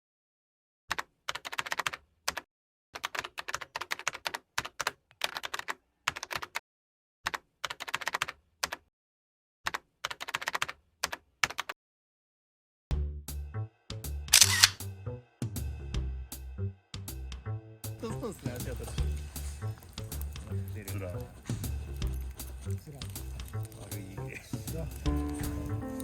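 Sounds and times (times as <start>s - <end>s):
computer keyboard typing: 0.9s - 2.4s, 3.0s - 6.6s, 7.3s - 8.8s, 9.7s - 11.7s.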